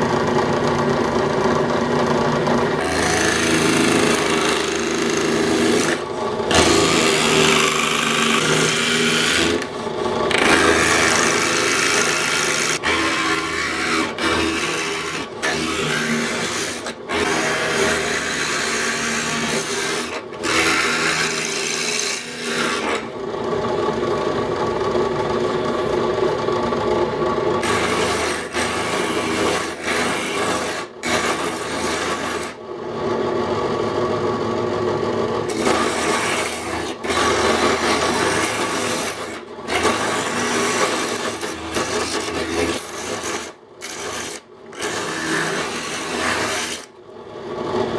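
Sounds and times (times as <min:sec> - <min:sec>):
planer cutter rasping wood: 0:00.0 - 0:23.5, 0:27.6 - 0:33.3, 0:35.4 - 0:47.9
drill press motor hum: 0:00.0 - 0:47.9.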